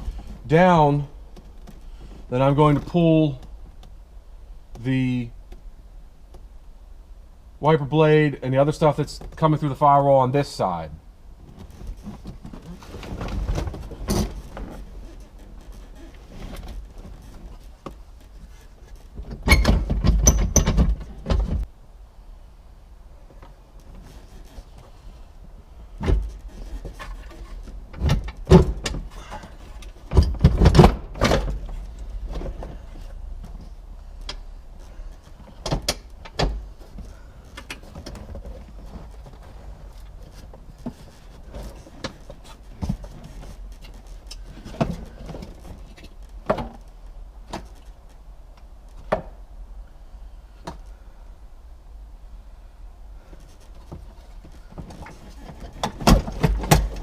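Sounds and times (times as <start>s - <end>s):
car parts and tools clattering: 53.4s - 57.0s.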